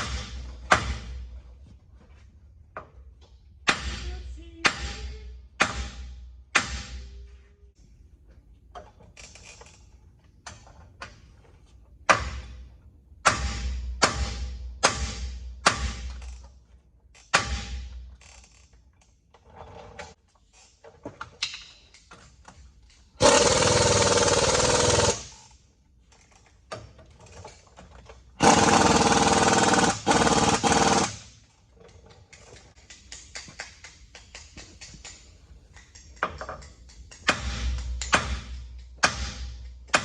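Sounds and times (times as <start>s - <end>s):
pneumatic impact wrench: 23.2s - 25.6s, 28.4s - 31.5s.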